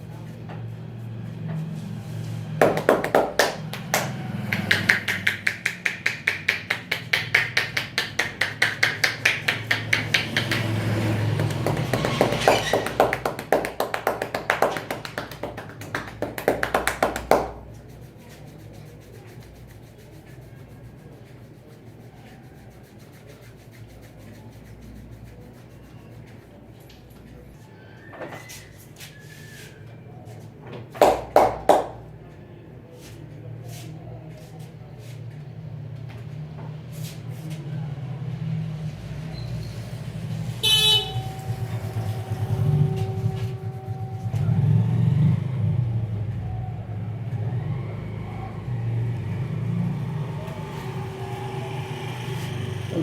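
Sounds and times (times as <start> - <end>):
rapid hand slaps of massage: 2.6 - 26.3, 30.9 - 32.0.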